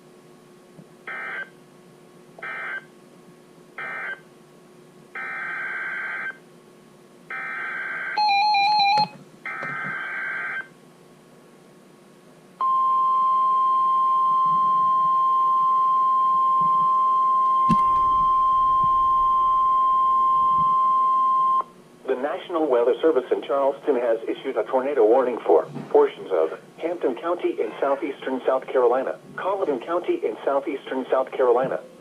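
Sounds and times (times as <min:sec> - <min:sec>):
loud steady alarm tone: 0:02.4 - 0:02.9, 0:03.8 - 0:04.2, 0:07.3 - 0:10.7, 0:16.6 - 0:21.7
steady tones: 0:17.6 - 0:21.6.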